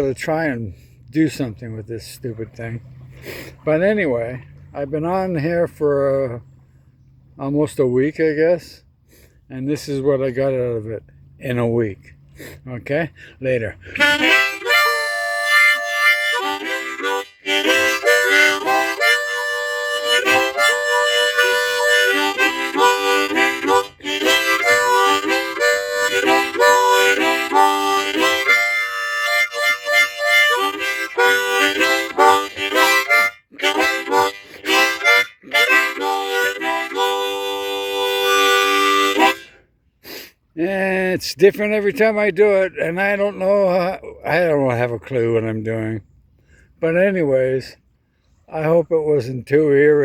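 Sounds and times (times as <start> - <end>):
harmonica playing: 13.8 - 40.3.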